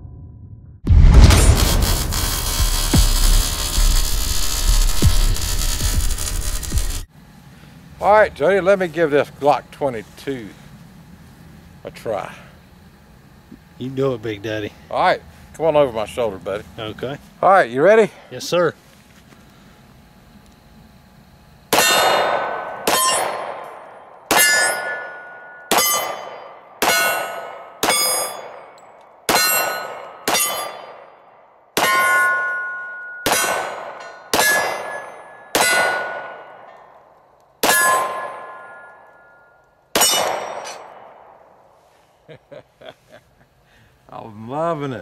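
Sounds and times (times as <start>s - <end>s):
pistol shots: 21.7s - 28.6s, 33.2s - 36.7s, 37.6s - 38.9s, 39.9s - 41.4s
steel targets clanging: 22.9s - 31.1s, 31.8s - 36.9s, 37.6s - 41.0s.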